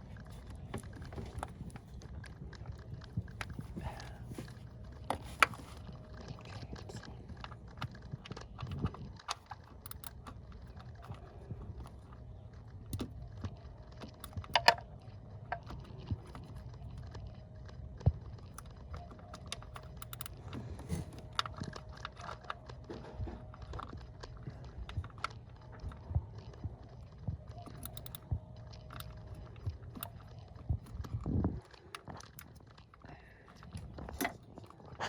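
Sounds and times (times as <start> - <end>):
ratchet clicking on a bolt: 20.0 - 20.3, 27.8 - 28.2.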